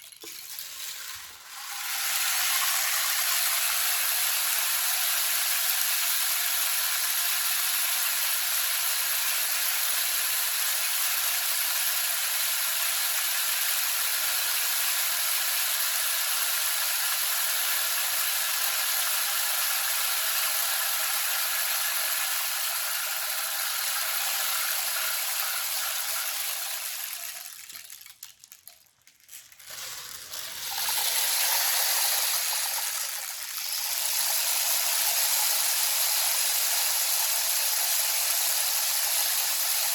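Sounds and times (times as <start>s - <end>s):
rainstick trickling: 0.0s - 4.6s, 23.8s - 36.4s.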